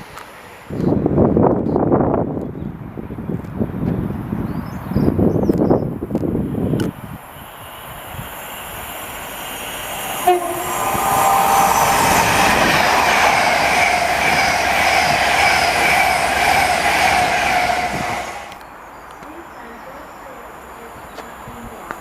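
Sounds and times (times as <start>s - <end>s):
train passing on rails: 5.5s - 22.0s
train horn toot: 9.9s - 18.6s.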